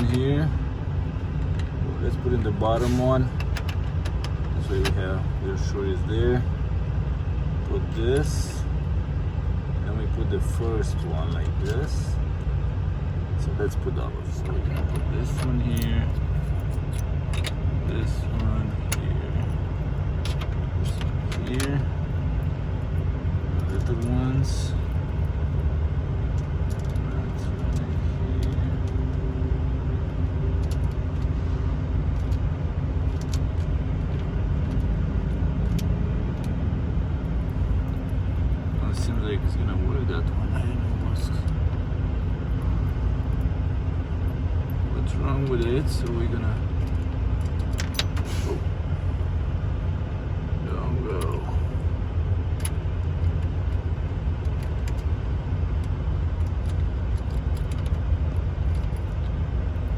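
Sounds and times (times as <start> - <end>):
diesel truck engine idling: 0.0 - 59.9
clicks of small nuts and screws: 14.6 - 23.0, 26.4 - 29.2, 30.6 - 31.3, 32.1 - 32.4, 33.0 - 36.6, 44.7 - 48.3, 52.6 - 55.2, 55.8 - 59.9.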